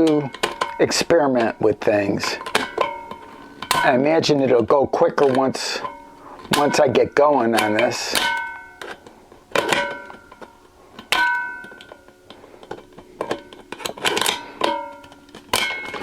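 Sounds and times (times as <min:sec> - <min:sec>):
metal bin ringing: 0:00.0 - 0:12.3, 0:13.2 - 0:16.0.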